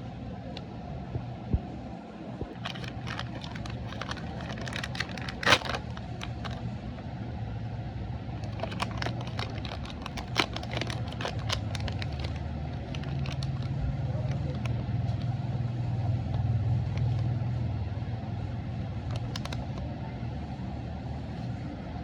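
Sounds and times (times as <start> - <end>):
steady low rumble: 0.0 - 22.0
plastic wrapper crinkling: 2.6 - 6.6, 8.4 - 13.7, 19.1 - 19.8.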